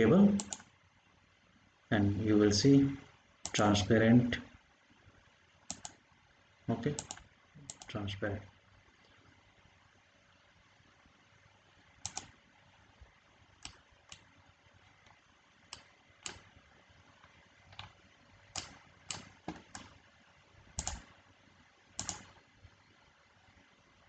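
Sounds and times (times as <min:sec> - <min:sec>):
keyboard and mouse clicks: 0:00.4 - 0:00.7, 0:05.7 - 0:06.0, 0:06.9 - 0:07.9, 0:12.0 - 0:12.4, 0:13.6 - 0:14.3, 0:15.0 - 0:16.5, 0:17.2 - 0:20.0, 0:20.8 - 0:21.1, 0:22.0 - 0:22.4.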